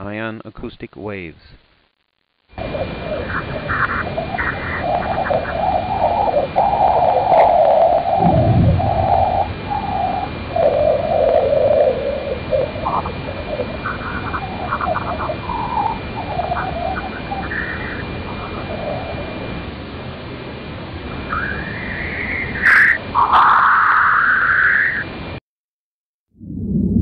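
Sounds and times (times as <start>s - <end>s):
steady hiss: 0.0s - 23.6s
thin steady high tone: 2.6s - 19.7s
broken warbling tones: 3.0s - 19.5s, 21.1s - 25.0s
short burst: 8.2s - 10.6s.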